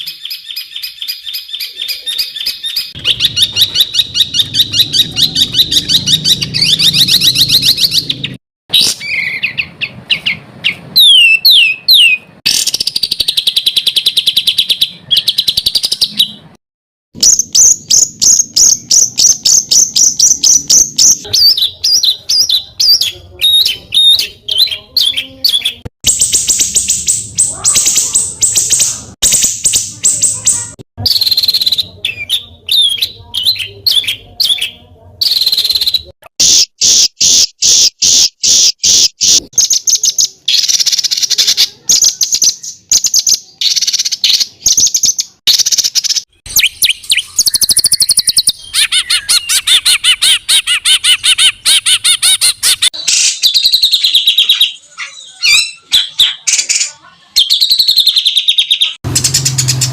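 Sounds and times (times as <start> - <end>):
songbird trilling: 0.0 - 16.4, 36.8 - 59.9.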